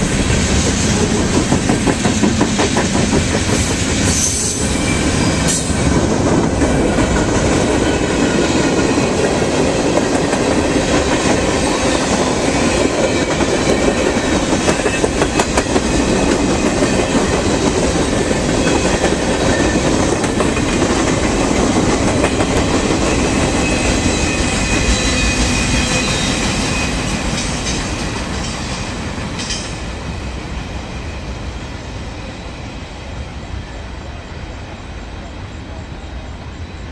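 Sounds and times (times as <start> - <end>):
freight train cars rolling past: 0.0 - 36.9.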